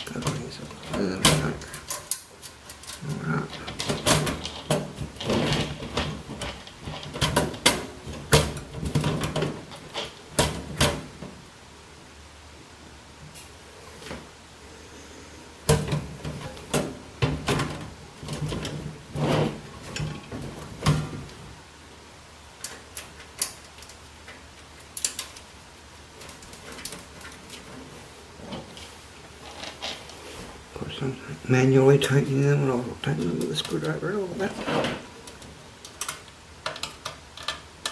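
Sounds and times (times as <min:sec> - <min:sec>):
steady low hum: 0:00.0 - 0:37.9.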